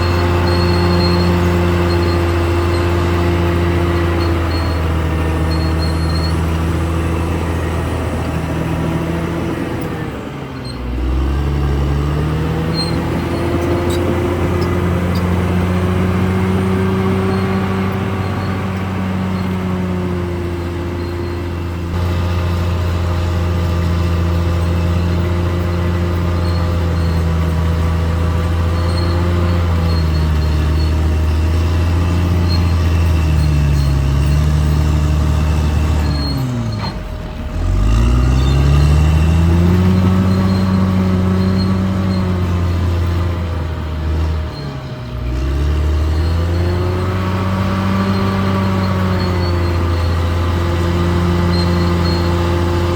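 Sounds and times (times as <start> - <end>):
bulldozer diesel engine running: 0.0 - 52.9.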